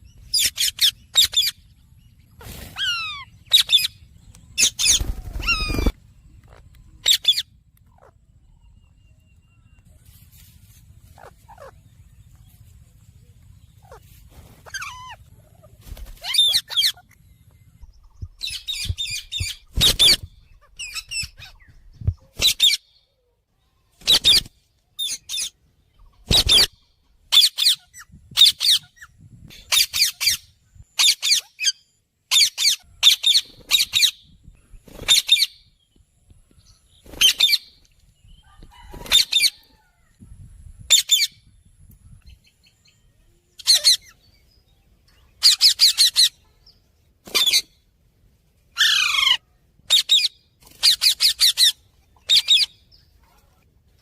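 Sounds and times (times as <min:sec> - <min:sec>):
parrots calling harshly: 0:02.7 - 0:03.9, 0:14.6 - 0:15.2, 0:48.8 - 0:52.7.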